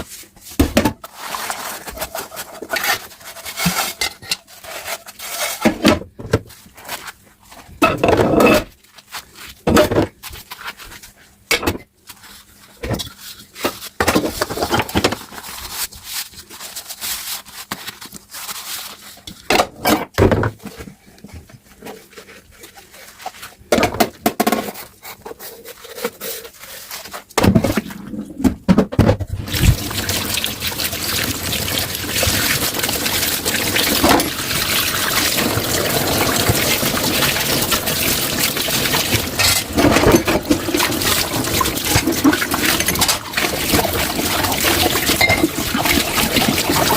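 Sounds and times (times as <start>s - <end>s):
tap water running into sink: 29.4s - 46.9s
crockery and utensils clinking: 45.2s - 45.6s.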